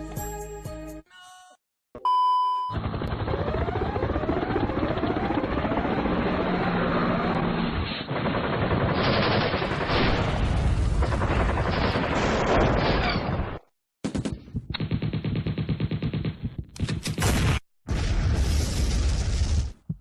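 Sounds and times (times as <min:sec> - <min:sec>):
machine-gun fire: 0:07.4 - 0:13.2
heavy gunfire: 0:08.0 - 0:13.2.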